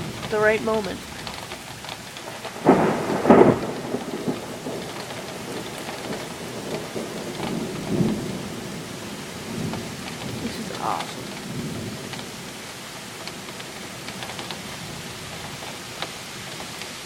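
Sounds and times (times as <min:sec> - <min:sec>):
thunder rumbling: 0:00.0 - 0:12.7
heavy rain: 0:00.0 - 0:17.0.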